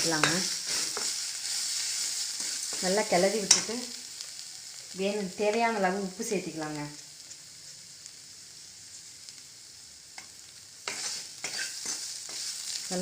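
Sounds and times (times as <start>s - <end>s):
spoon scraping a pan: 0.0s - 3.9s, 10.2s - 12.8s
masala sizzling in oil: 0.0s - 13.0s.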